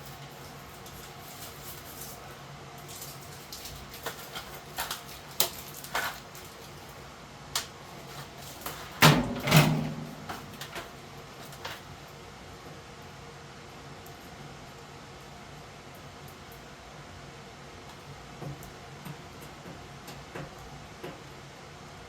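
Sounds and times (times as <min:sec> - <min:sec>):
clicks and knocks on floor vent: 0:18.4 - 0:21.2.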